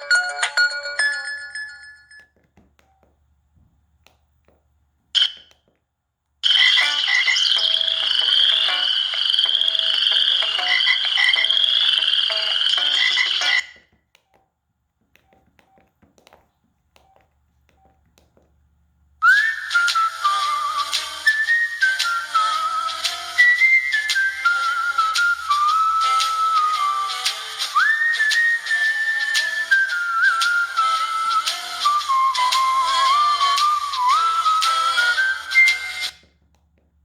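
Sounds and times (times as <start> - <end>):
phone ringtones: 6.4 - 13.8
warbling high ringtone: 6.4 - 13.8
gliding whistle-like tones: 19.2 - 36.2.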